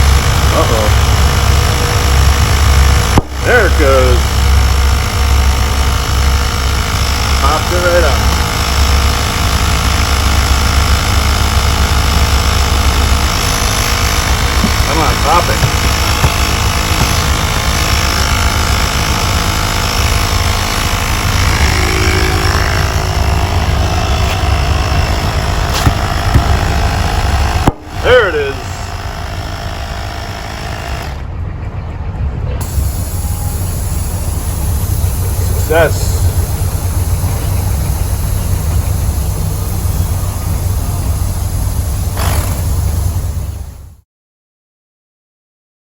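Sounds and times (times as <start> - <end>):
air compressor running: 0.0 - 31.4, 32.6 - 44.0
air hiss: 32.6 - 43.6.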